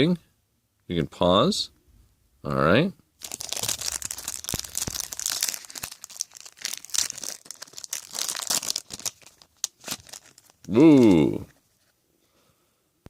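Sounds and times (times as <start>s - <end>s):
foil wrapper crinkling and tearing: 3.2s - 11.2s.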